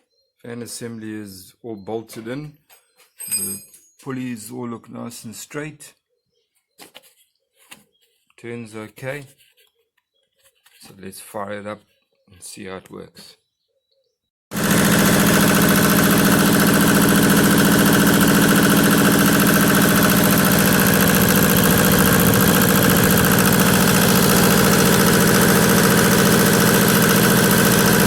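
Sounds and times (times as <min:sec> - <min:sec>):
diesel tractor engine idling: 0:14.6 - 0:28.0.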